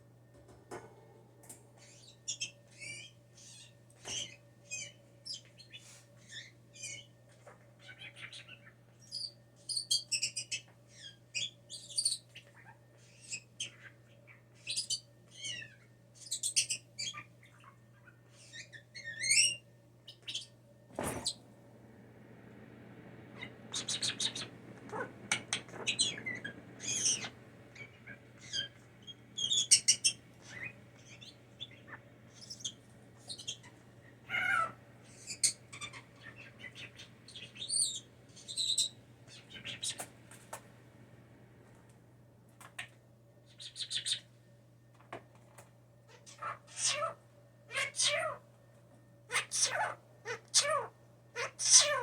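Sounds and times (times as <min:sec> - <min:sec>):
steady low hum: 0:00.0 - 0:52.0
blue jay chirping and chattering: 0:01.8 - 0:07.1, 0:07.8 - 0:17.7, 0:18.3 - 0:20.6, 0:23.4 - 0:40.2, 0:43.5 - 0:44.3.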